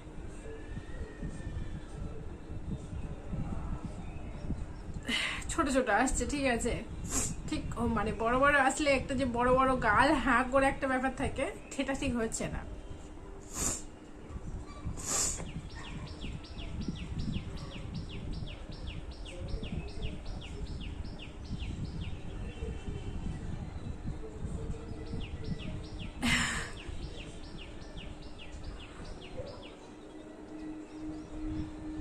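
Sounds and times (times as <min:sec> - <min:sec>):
low background noise: 0:00.0 - 0:32.0
breathy rushes of air: 0:13.4 - 0:14.0
bird chirping: 0:24.8 - 0:32.0.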